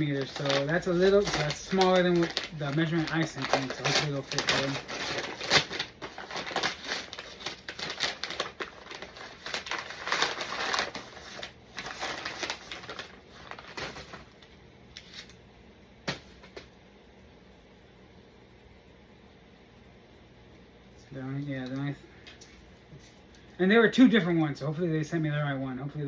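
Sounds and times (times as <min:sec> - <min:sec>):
packaging rustling and clicking: 0:00.0 - 0:14.4.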